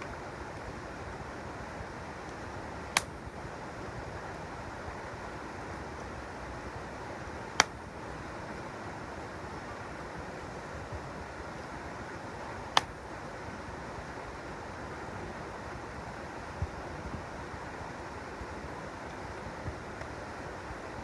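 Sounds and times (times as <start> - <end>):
campfire wood popping: 0.0 - 3.7, 7.5 - 7.9, 12.6 - 13.1.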